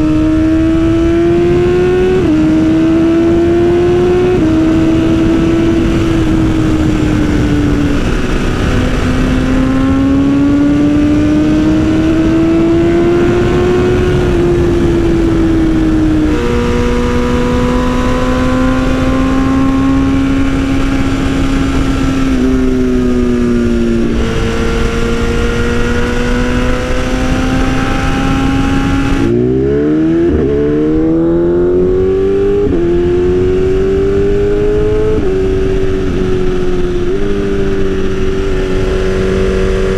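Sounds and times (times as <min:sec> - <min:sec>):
motorcycle engine revving: 0:00.0 - 0:39.9
wind rush: 0:00.0 - 0:39.9.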